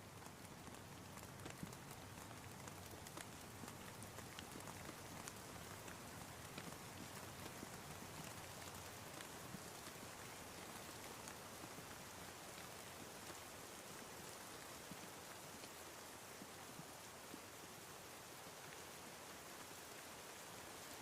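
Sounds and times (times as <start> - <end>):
raindrops ticking: 0.0 - 13.8
light rain falling: 0.0 - 21.0.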